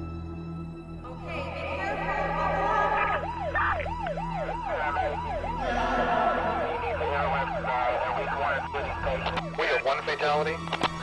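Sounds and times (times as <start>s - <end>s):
siren yelping: 1.2s - 9.6s.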